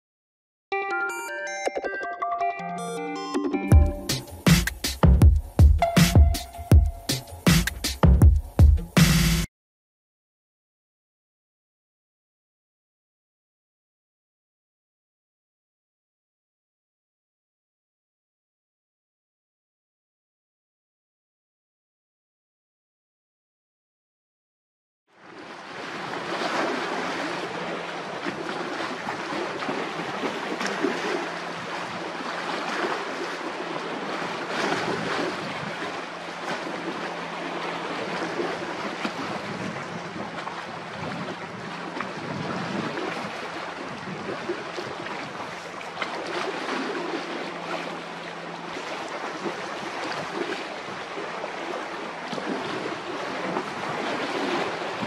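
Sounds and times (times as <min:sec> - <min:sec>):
waves breaking: 0:25.2 - 0:55.0
wind buffeting microphone: 0:34.7 - 0:35.9, 0:38.1 - 0:45.6.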